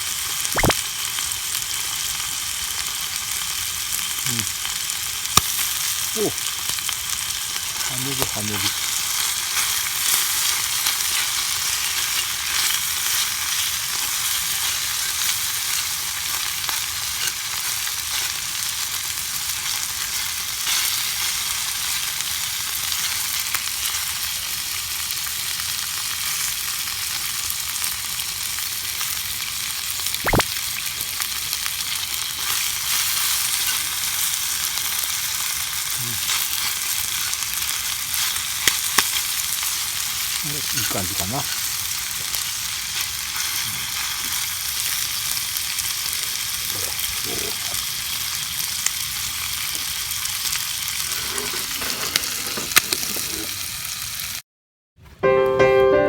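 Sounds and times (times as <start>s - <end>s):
meat sizzling in a skillet: 0.0s - 54.4s
sharp pop: 0.6s - 0.8s, 30.2s - 30.5s.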